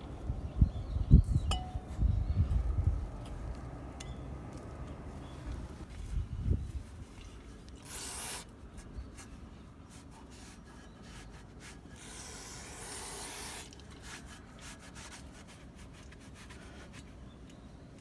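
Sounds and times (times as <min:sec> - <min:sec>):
hissing scraping on brake parts: 0:07.4 - 0:17.2.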